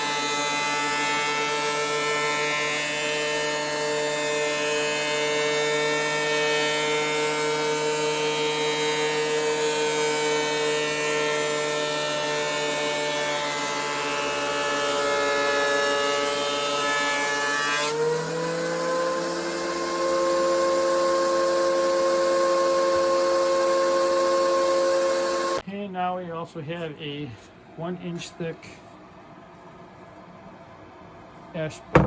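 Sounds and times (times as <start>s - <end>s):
thickness planer cutting wood: 0.0s - 25.6s.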